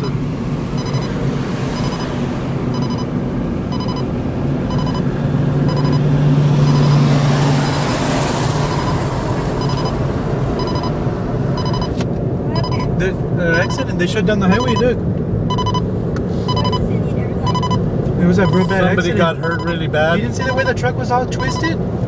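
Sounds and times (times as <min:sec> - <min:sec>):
electronic ticking: 0:00.0 - 0:00.2, 0:00.8 - 0:01.2, 0:01.8 - 0:04.1, 0:04.7 - 0:07.1, 0:08.7 - 0:09.0, 0:09.6 - 0:10.0, 0:10.6 - 0:11.0, 0:11.6 - 0:12.9, 0:13.5 - 0:13.9, 0:15.5 - 0:15.8, 0:17.4 - 0:17.8, 0:18.4 - 0:18.8, 0:20.4 - 0:20.8, 0:21.4 - 0:21.7
car road noise: 0:00.0 - 0:22.0.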